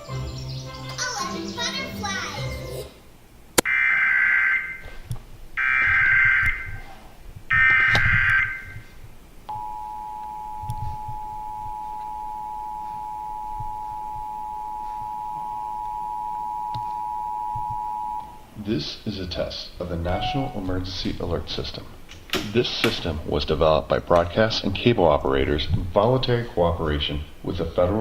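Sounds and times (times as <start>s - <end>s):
two-tone attention signal: 9.5s - 18.4s, 20.1s - 20.7s.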